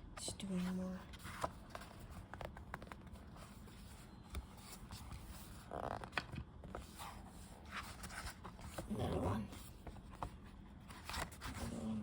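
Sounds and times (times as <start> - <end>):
book spine crackling: 1.2 - 9.0.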